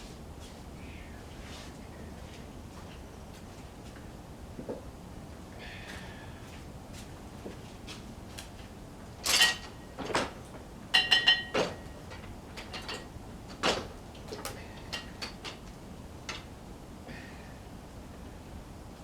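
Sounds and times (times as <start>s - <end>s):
metal clanks and knocks: 9.2s - 15.7s.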